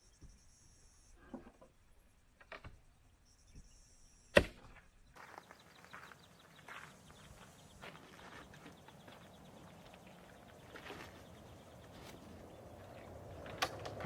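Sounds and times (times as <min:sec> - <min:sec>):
soft rustling and scuffing: 0:05.2 - 0:13.6.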